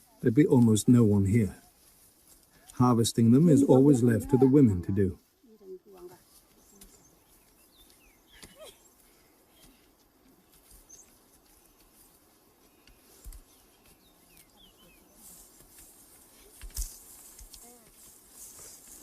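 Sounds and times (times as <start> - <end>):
faint bird chirps: 5.5 - 15.4.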